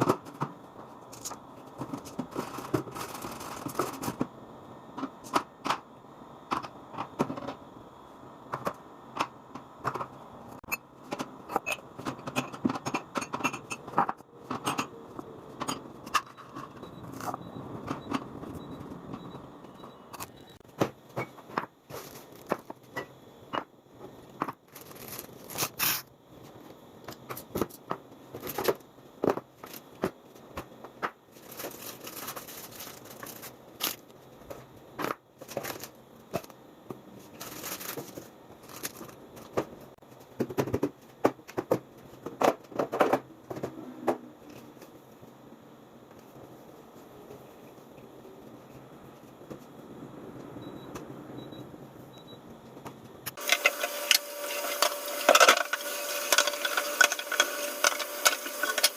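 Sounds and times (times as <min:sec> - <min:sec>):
objects being handled: 0:53.2 - 0:58.9.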